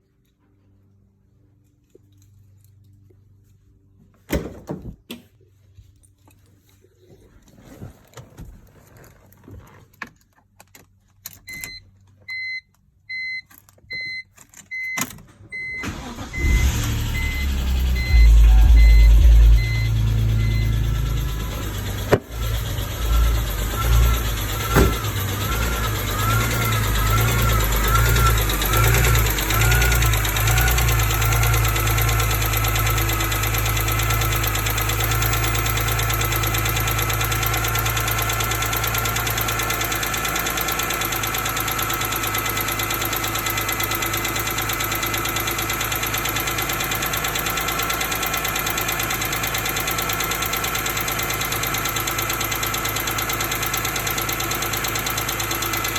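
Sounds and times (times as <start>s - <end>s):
car engine idling with ticking: 15.8s - 55.9s
whine: 15.9s - 30.3s.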